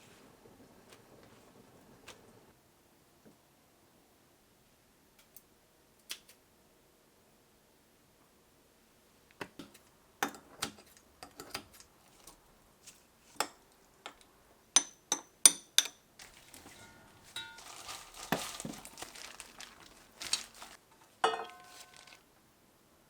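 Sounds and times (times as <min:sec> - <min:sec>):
dishes and utensils clinking: 0:15.5 - 0:19.4, 0:20.2 - 0:22.2.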